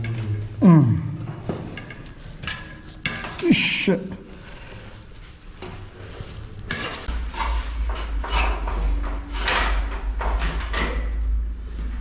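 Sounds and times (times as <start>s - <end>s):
low rumble: 0.0s - 1.9s.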